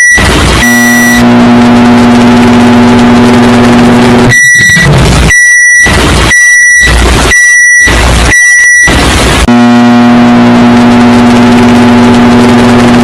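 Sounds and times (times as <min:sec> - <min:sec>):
high-pitched microwave beeps: 0:00.0 - 0:01.2, 0:04.4 - 0:09.0
microwave oven humming: 0:00.0 - 0:04.3, 0:09.5 - 0:13.0.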